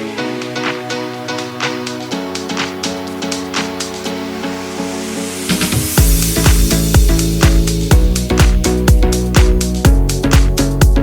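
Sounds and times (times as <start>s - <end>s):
kick drum beat: 5.7s - 11.0s.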